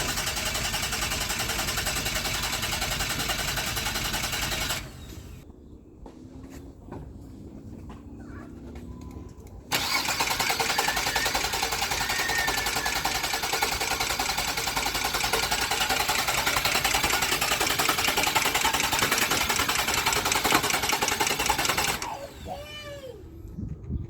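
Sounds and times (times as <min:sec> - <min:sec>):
car engine cranking: 0:00.0 - 0:05.4, 0:09.7 - 0:22.6.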